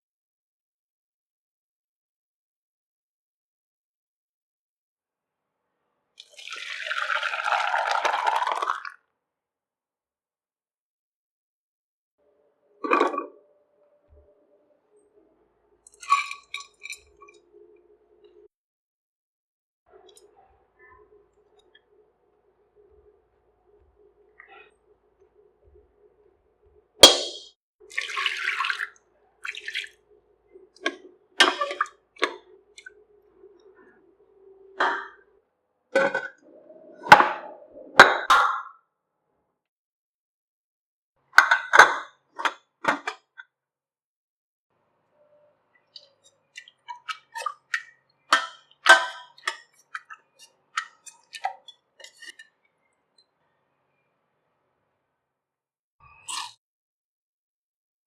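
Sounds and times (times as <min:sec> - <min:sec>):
kitchen utensils clicking and knocking: 0:46.6 - 0:52.5.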